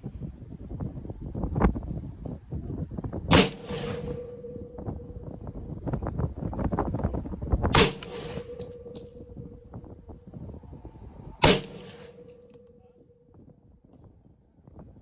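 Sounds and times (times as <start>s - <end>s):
rifle shots: 3.3s - 5.2s, 7.7s - 9.7s, 11.4s - 12.6s.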